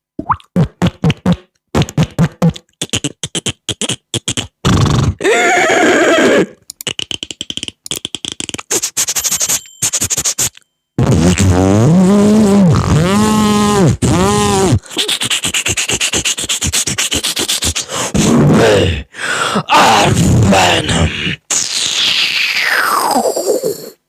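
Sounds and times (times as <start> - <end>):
beatboxing mouth clicks and pops: 0.2 - 5.2, 6.6 - 18.4, 21.5 - 24.0
raspy mouth noise: 0.2 - 5.2, 6.4 - 19.0, 20.0 - 24.0
held vocal tone bending in pitch: 11.0 - 19.1, 19.7 - 24.0.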